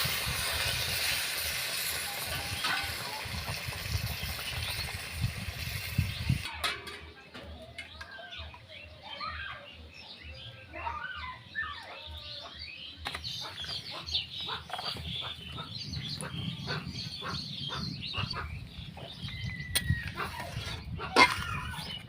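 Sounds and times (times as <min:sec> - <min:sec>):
chickens clucking: 0:11.7 - 0:19.1, 0:19.7 - 0:22.0.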